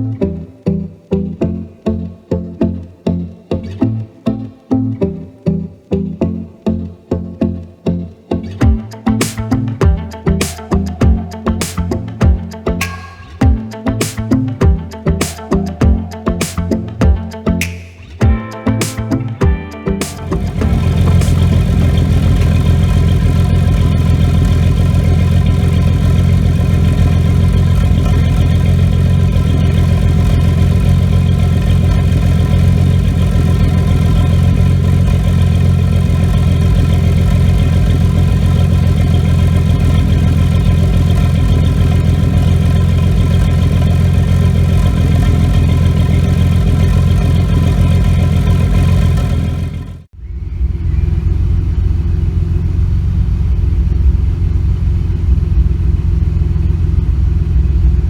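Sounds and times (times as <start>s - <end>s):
car engine idling with misfire: 20.2s - 50.1s, 51.1s - 58.0s.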